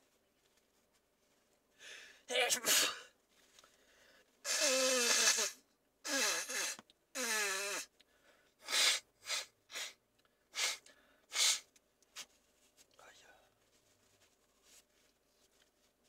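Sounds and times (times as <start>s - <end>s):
person sneezing: 2.3s - 3.1s, 8.6s - 10.0s, 10.6s - 11.7s
short breathy bursts: 3.7s - 12.3s.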